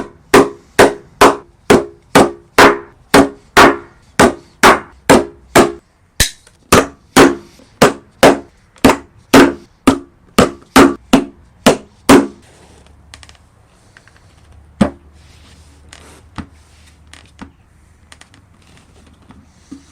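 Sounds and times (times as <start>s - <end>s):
hammer blows ringing: 0.0s - 5.8s.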